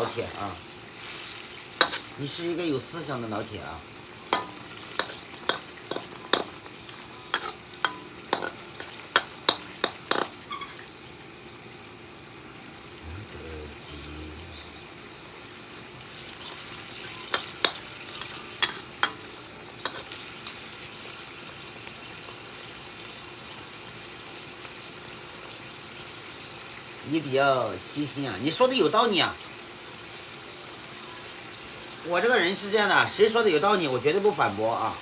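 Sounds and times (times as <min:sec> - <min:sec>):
faint steady hiss: 0:00.0 - 0:35.0
utensils clinking against dish: 0:07.4 - 0:10.8.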